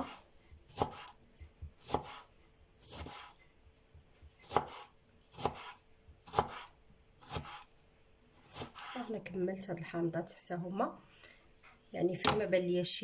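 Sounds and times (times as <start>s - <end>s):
knife cutting on board: 0.0s - 3.4s, 4.4s - 7.7s, 8.4s - 9.1s.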